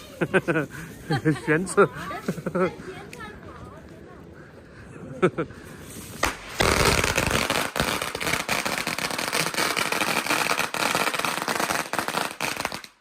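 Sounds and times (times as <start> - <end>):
firecrackers crackling: 5.4 - 13.0.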